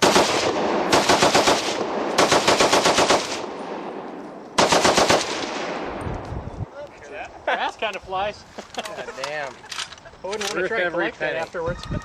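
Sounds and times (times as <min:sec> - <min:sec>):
machine gun firing bursts: 0:00.0 - 0:03.6, 0:04.6 - 0:05.6.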